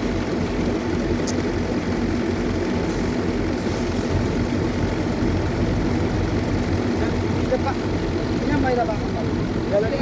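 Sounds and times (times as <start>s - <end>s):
diesel engine running: 0.0s - 10.0s.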